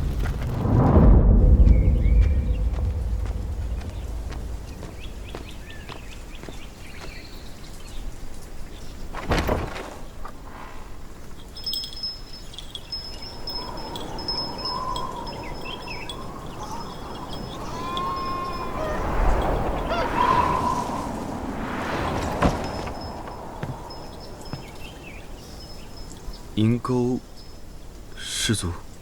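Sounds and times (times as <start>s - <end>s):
high chime-like tones: 11.4s - 20.0s.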